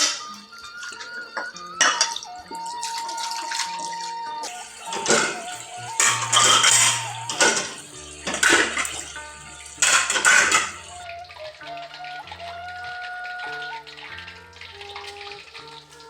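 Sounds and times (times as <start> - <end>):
background music: 0.0 - 16.0
water splashing and running: 0.0 - 16.0
dishes and pots clattering: 1.0 - 2.2, 4.5 - 11.0.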